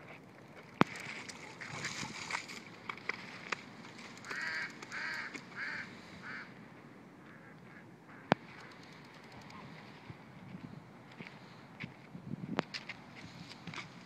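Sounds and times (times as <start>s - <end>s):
waterfowl calling: 4.2s - 6.6s, 7.2s - 8.9s.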